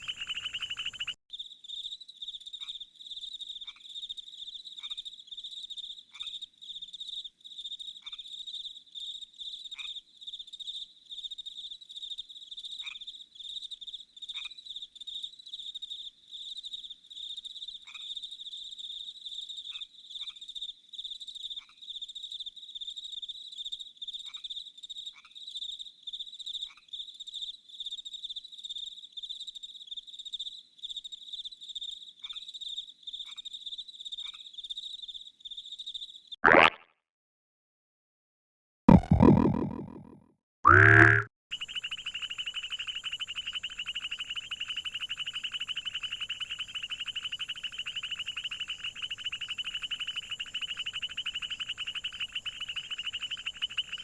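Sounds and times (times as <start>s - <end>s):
falling whistle-like frog calls: 0.0s - 1.2s, 38.9s - 54.0s.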